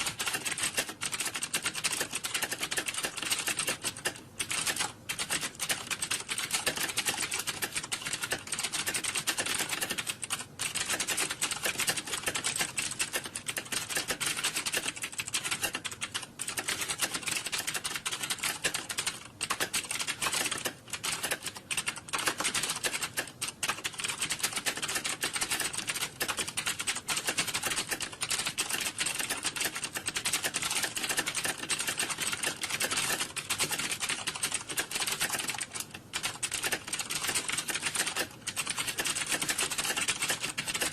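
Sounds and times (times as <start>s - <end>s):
computer keyboard typing: 0.0s - 40.9s.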